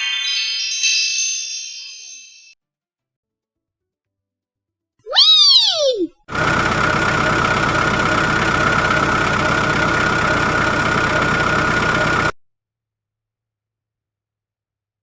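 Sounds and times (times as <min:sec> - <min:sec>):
toy tractor engine whining: 0:06.3 - 0:12.4.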